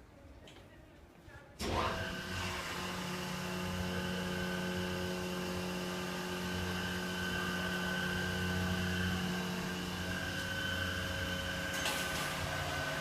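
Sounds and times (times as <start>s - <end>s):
elevator machinery humming: 2.0s - 13.0s.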